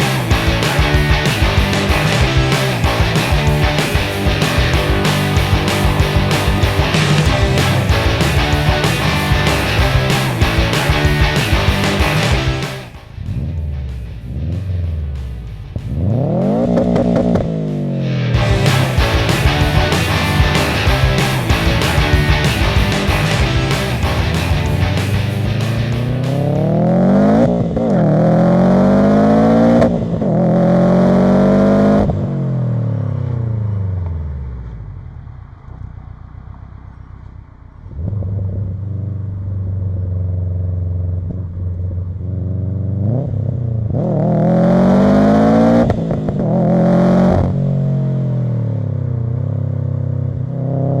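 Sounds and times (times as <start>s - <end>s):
engine idling with low rumble: 0.0s - 26.9s, 32.1s - 43.9s
car engine accelerating: 0.0s - 51.0s.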